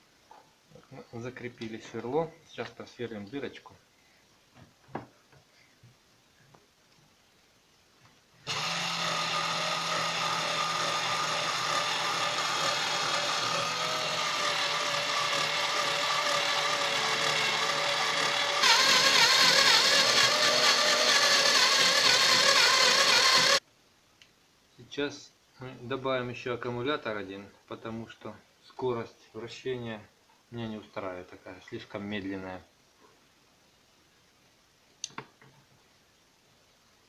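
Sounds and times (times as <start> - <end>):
cordless drill whining: 8.5 - 23.6.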